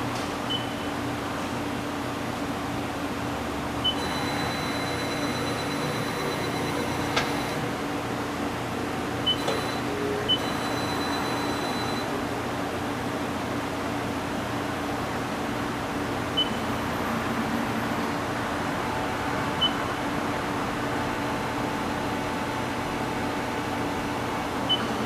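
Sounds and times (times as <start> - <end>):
machining center humming: 1.9 - 25.0
high-pitched machine whine: 3.8 - 8.1, 9.2 - 12.7.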